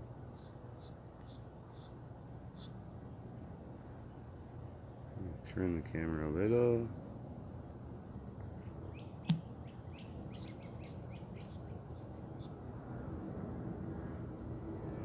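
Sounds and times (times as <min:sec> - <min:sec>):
birds chirping: 0:08.8 - 0:12.6.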